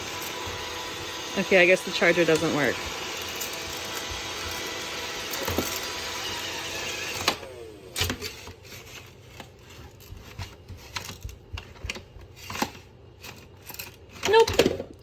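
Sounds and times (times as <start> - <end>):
motor winding down: 0.0 - 8.2
robot vacuum whirring: 0.0 - 8.6.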